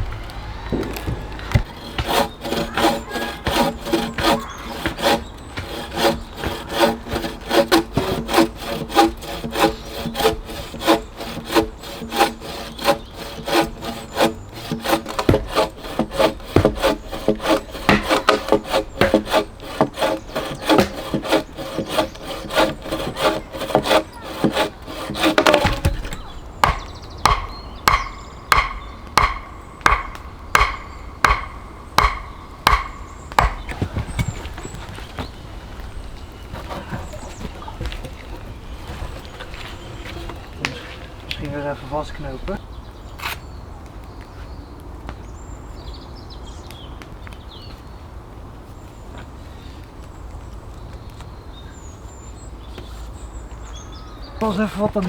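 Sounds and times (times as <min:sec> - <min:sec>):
hand saw cutting through log: 0:00.0 - 0:42.6, 0:54.4 - 0:55.0.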